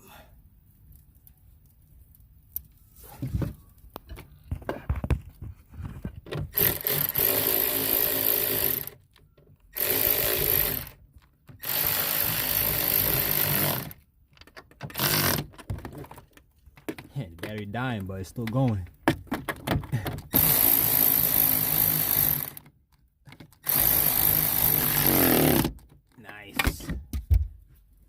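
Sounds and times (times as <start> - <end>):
cordless drill driving screws: 6.5 - 9.0, 9.7 - 11.0, 11.6 - 14.0, 14.9 - 15.5, 20.3 - 22.7, 23.6 - 25.8.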